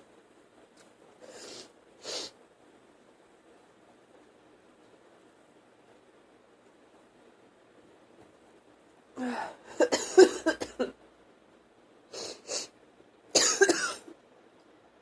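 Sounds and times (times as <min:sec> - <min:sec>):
woman coughing: 0:09.7 - 0:11.0, 0:13.4 - 0:14.1.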